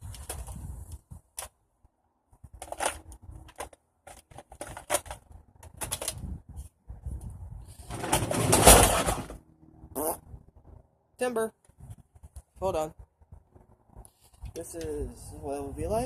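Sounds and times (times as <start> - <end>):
plastic clicks and rustling: 2.6 - 6.2.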